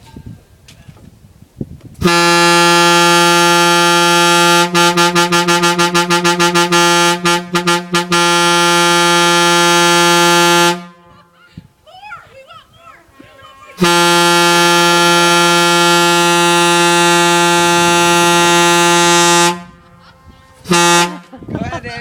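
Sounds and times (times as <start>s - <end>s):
truck horn blasting: 2.0s - 11.1s, 13.1s - 21.6s.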